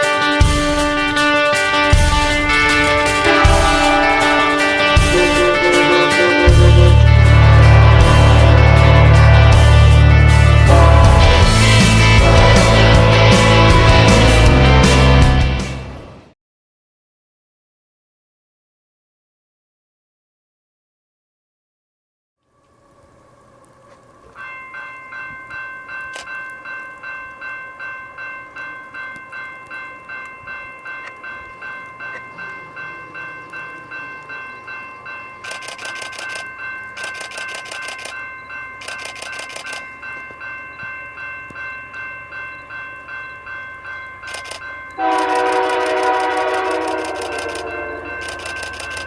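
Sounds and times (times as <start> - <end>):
level-crossing warning bell: 0.0 - 14.8, 23.4 - 49.0
locomotive horn blowing: 0.0 - 15.4, 45.0 - 48.4.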